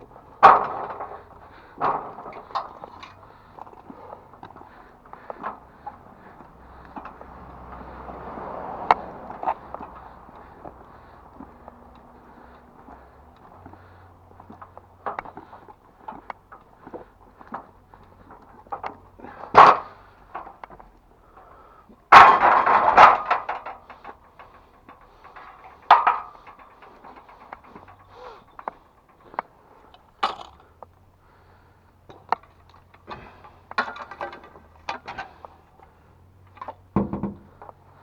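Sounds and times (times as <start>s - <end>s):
knocks and thuds: 37.0s - 37.6s.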